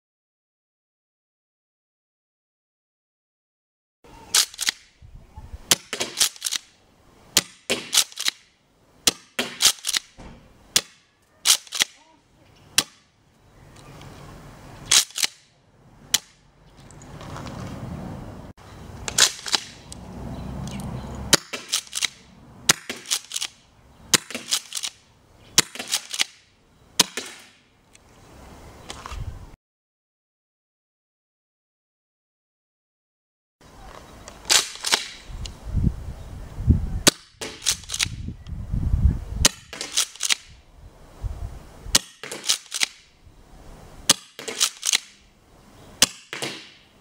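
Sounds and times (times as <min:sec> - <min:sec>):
airsoft shotgun shots: 0:05.7 - 0:06.6, 0:07.4 - 0:08.4, 0:09.0 - 0:10.2, 0:10.8 - 0:12.0, 0:21.3 - 0:23.5, 0:24.1 - 0:24.9, 0:25.6 - 0:26.4, 0:27.0 - 0:27.6, 0:41.9 - 0:43.0, 0:44.1 - 0:45.2, 0:46.0 - 0:46.8.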